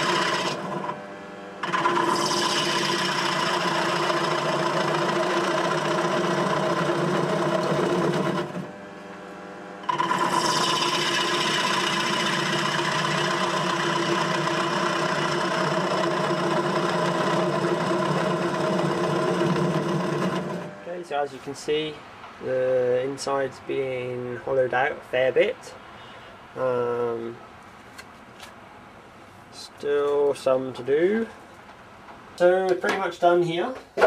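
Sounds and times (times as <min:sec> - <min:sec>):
gouge cutting wood: 0:00.0 - 0:01.0, 0:01.6 - 0:08.6, 0:09.8 - 0:20.7
wood lathe humming: 0:00.0 - 0:01.0, 0:01.6 - 0:08.8, 0:09.8 - 0:20.9.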